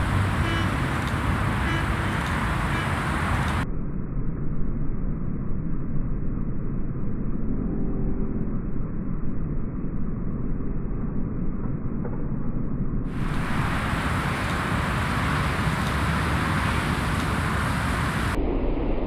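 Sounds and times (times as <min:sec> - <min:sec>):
distant thunder rumbling: 0:00.0 - 0:03.6, 0:13.2 - 0:18.4.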